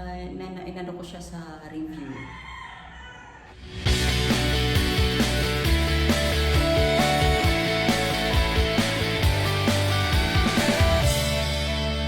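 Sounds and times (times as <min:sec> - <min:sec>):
rock music with guitar and drums: 0:03.8 - 0:12.0.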